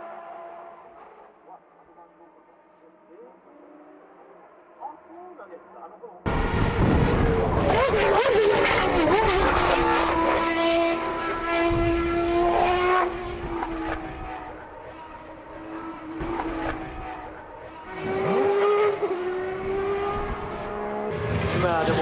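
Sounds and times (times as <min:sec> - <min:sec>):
racing car engine high revs: 0:06.3 - 0:22.0.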